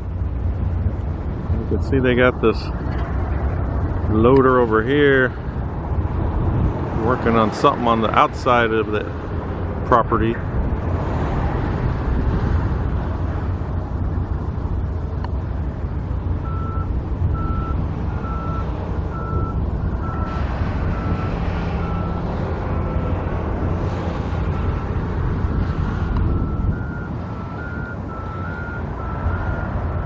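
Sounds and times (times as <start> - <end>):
loader engine running: 0.0 - 30.0
reversing alarm beeping: 16.4 - 23.1, 26.3 - 29.7.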